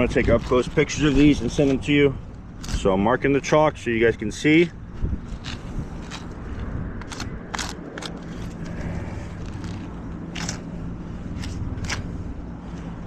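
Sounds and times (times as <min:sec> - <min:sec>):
chalk scraping on shingles: 0:00.0 - 0:02.0, 0:05.0 - 0:13.0
low rumble: 0:04.8 - 0:13.0.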